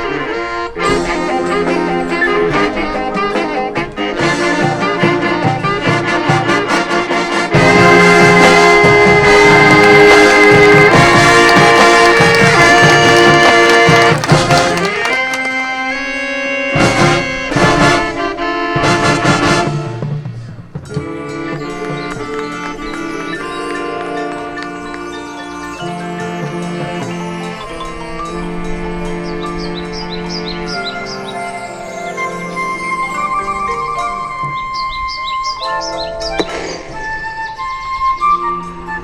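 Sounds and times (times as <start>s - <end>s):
marching band playing: 0.0s - 34.8s
sharp percussion hits: 7.4s - 15.4s, 36.3s - 37.5s.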